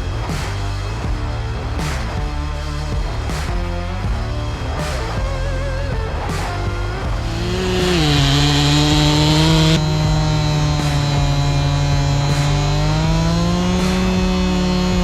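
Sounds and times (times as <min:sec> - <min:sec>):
chainsaw cutting wood: 0:07.2 - 0:15.0.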